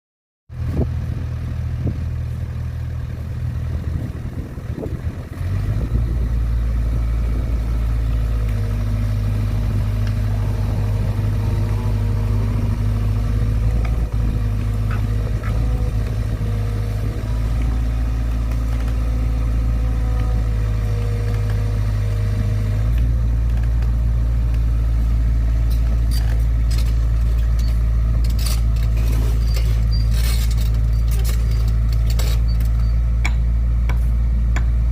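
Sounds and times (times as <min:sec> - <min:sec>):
diesel engine droning: 0:00.5 - 0:34.9
steady whine: 0:06.7 - 0:19.0.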